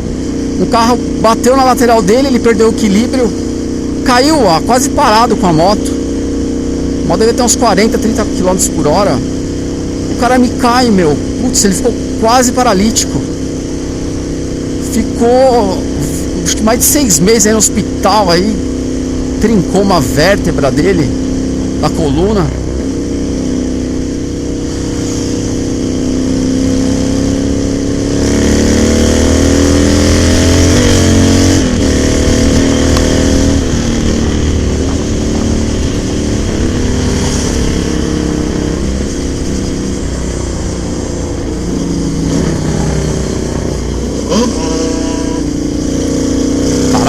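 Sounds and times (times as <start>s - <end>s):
motorcycle engines revving: 0.0s - 47.0s
road noise: 0.0s - 47.0s
rushing wind: 22.4s - 44.6s.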